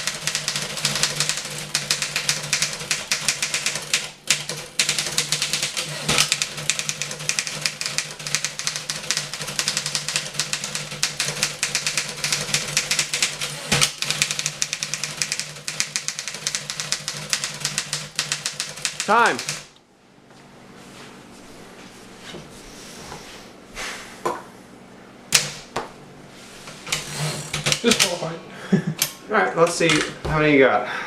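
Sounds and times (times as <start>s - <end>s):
manual typewriter typing: 0.0s - 19.7s, 26.8s - 28.2s.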